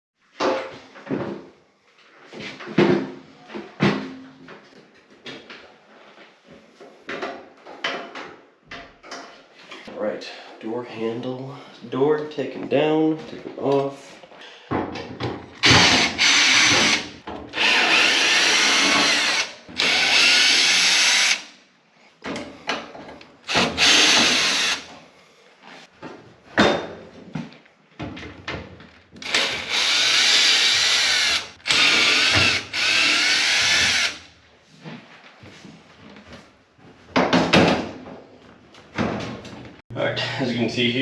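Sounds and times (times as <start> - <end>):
power drill whining: 15.6 - 21.5, 23.5 - 24.9, 29.2 - 34.3.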